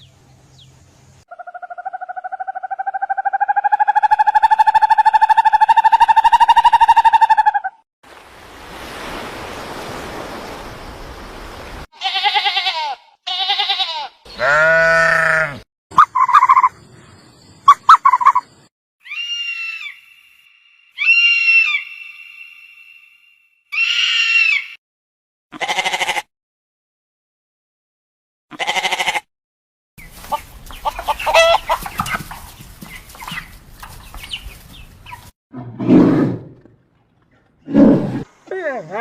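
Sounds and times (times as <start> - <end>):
bleat-like animal calls: 11.9 - 15.6, 19.0 - 20.1, 21.0 - 22.0, 23.7 - 24.8, 25.5 - 26.3, 28.5 - 29.3.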